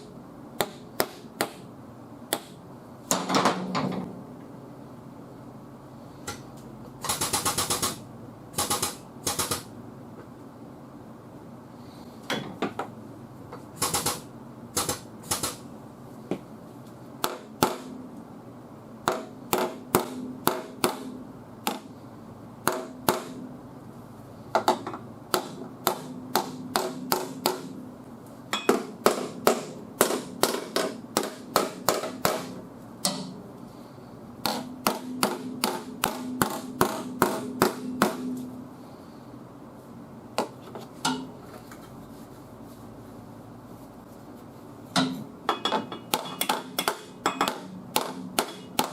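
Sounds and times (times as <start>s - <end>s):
hammer striking sheet metal: 45.0s - 48.9s.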